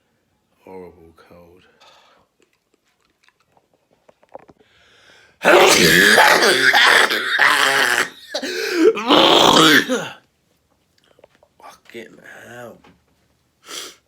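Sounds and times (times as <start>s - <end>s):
man sneezing loudly: 5.4s - 10.2s.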